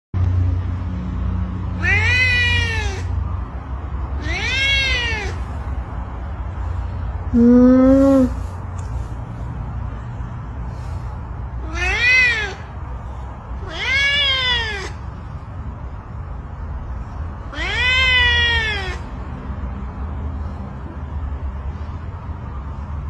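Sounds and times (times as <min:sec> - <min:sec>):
cat meowing: 0:01.7 - 0:03.2, 0:04.2 - 0:05.4, 0:07.3 - 0:08.4, 0:11.6 - 0:12.8, 0:13.6 - 0:15.0, 0:17.5 - 0:19.1.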